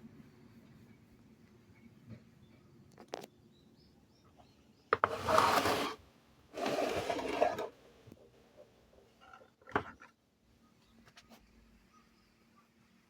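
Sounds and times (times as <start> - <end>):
rubbing scraping sounds: 5.0 - 6.0, 6.6 - 7.7.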